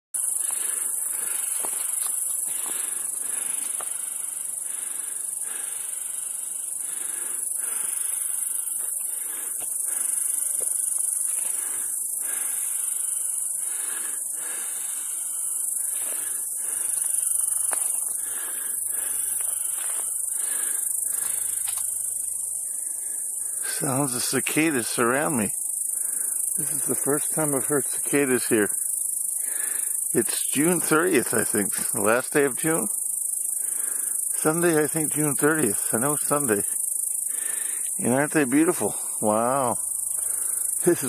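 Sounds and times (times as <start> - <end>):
pulsing rasping buzz: 0.2 - 27.5
cicadas whining: 0.2 - 41.0.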